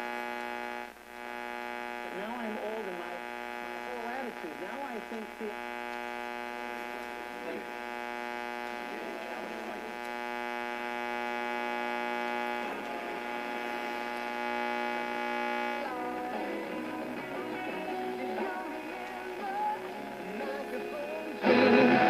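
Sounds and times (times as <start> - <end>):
radio buzzing hum: 0.0 - 22.0
faint voice on radio: 1.9 - 10.2, 11.6 - 14.4.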